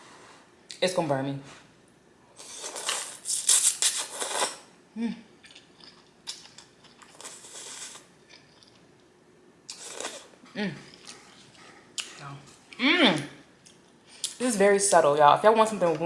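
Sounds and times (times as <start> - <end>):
hummed voice sound: 5.0 - 5.3
chewing: 9.7 - 14.4.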